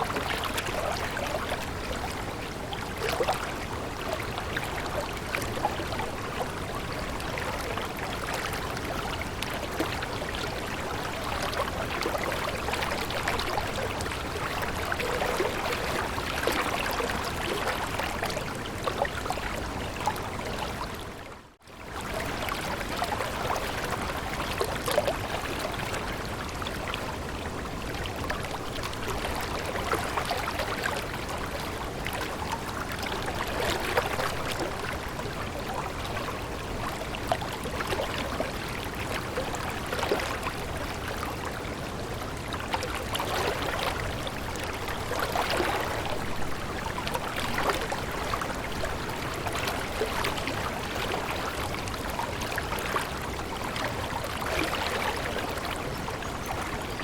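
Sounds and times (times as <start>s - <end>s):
stream water babbling: 0.0s - 57.0s.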